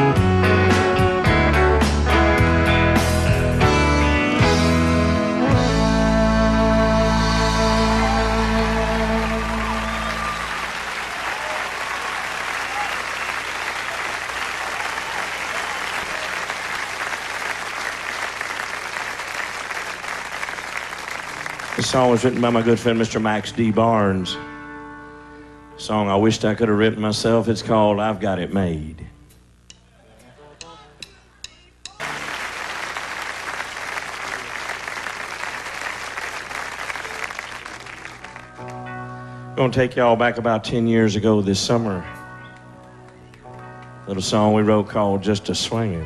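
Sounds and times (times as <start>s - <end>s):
audience applauding: 7.7s - 23.5s, 32.0s - 38.9s.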